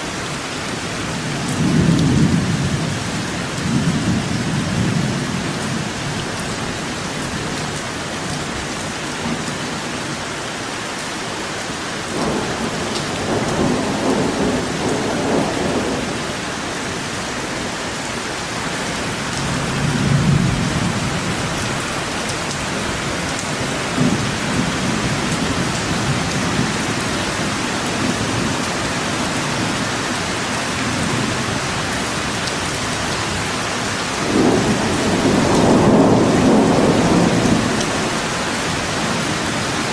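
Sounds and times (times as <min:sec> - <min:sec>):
steady rain: 0:00.0 - 0:39.9
low thunder rumbles: 0:12.1 - 0:16.5, 0:34.2 - 0:39.2.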